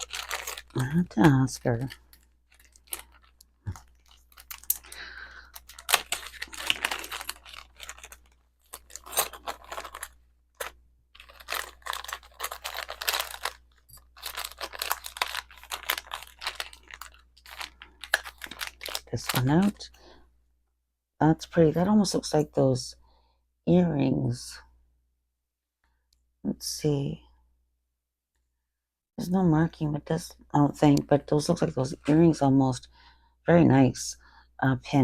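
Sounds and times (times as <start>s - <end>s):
packaging rustling and crinkling: 0.0s - 19.8s.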